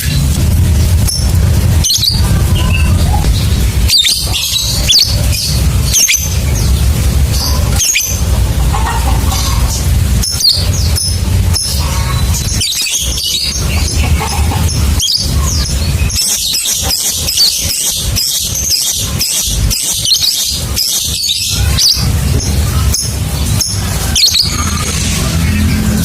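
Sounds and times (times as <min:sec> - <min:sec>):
low steady hum: 0:00.0 - 0:20.8
lovebirds chattering: 0:00.0 - 0:26.0.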